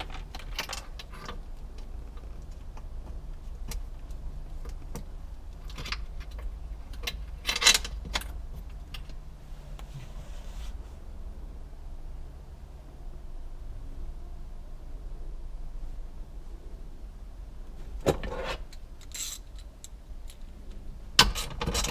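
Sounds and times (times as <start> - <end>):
small parts clicking and rattling: 0.0 - 9.2, 18.2 - 21.9
low steady hum: 0.0 - 21.9.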